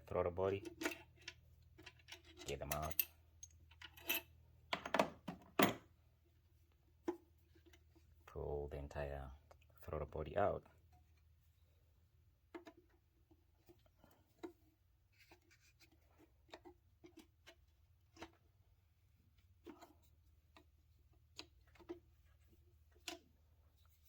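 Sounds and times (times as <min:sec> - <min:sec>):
hand tools clicking and tapping metal: 0:00.6 - 0:05.8.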